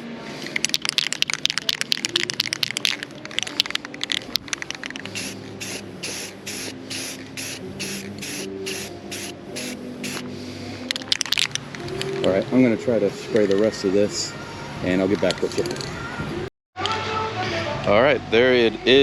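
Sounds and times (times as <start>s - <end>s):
spray paint can hissing: 0.4s - 10.3s.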